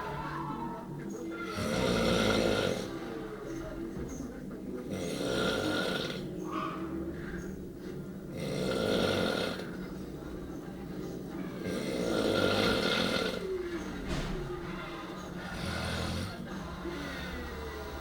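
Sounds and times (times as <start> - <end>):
loud snores: 1.4 - 3.1, 4.8 - 6.3, 8.3 - 9.8, 11.6 - 13.6, 15.3 - 18.0
sleep breathing: 11.7 - 18.0.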